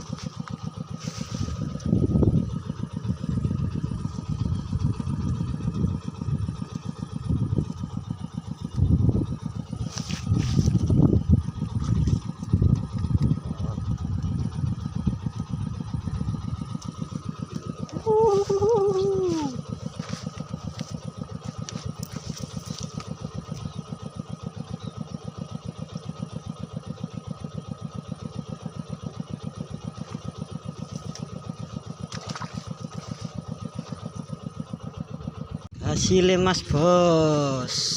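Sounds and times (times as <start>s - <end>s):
small motorcycle engine idling: 0.0s - 37.9s
wavering tone falling in pitch: 17.9s - 19.7s.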